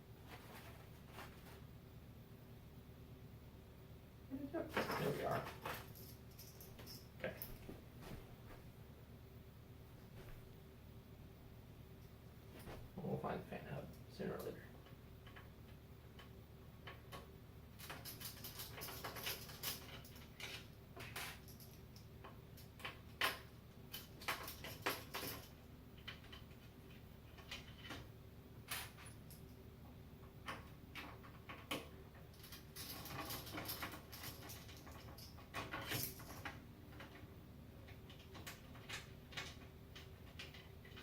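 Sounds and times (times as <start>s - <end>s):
steady low hum: 0.0s - 24.5s.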